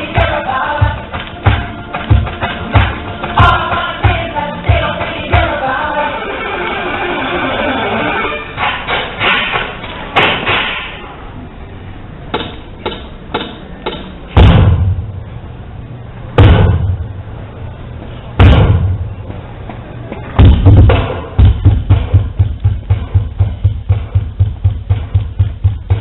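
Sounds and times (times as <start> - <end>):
heavy booming hits: 14.4 - 15.2, 16.4 - 17.2, 18.4 - 19.2, 20.4 - 26.0.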